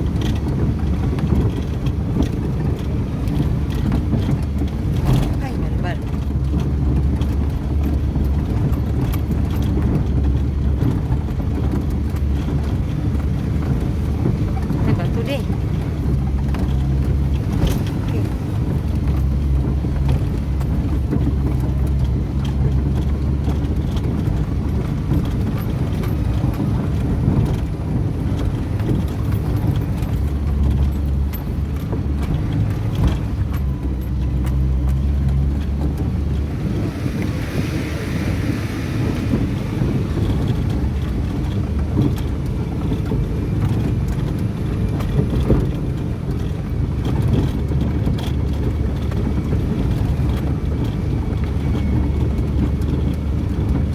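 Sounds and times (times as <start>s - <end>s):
engine droning: 0.0s - 53.9s.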